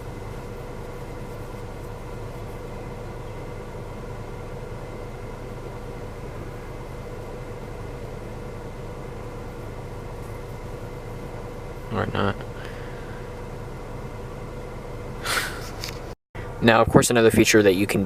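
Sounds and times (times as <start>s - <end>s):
faint steady hum: 0.0s - 18.0s
low car cabin rumble: 0.0s - 18.0s.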